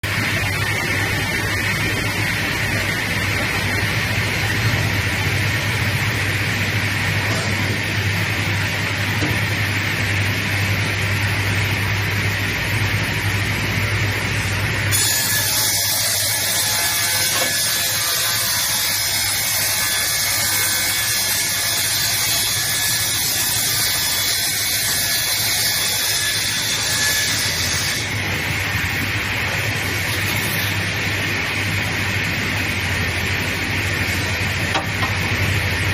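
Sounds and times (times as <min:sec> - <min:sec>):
rip saw sawing lumber: 0:15.0 - 0:28.2.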